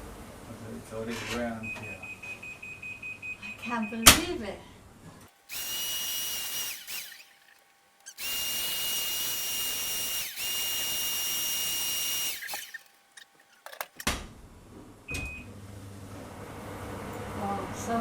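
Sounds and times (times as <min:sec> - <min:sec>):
electric drill whining: 0:05.3 - 0:14.0.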